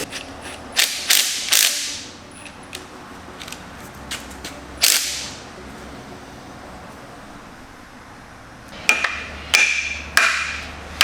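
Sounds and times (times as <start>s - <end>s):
air impact wrench bursts: 0.0s - 2.1s, 4.8s - 5.4s.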